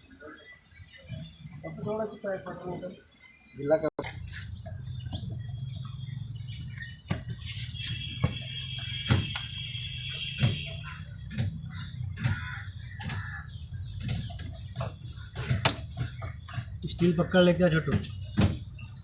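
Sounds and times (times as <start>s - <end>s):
birds chirping: 0.0s - 19.0s.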